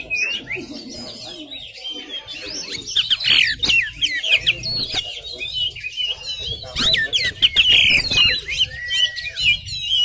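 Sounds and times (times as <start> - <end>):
bird singing whistles and chirps: 0.0 - 10.0.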